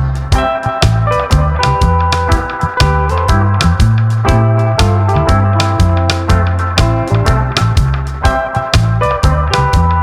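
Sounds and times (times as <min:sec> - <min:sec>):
background music with beat: 0:00.0 - 0:10.0.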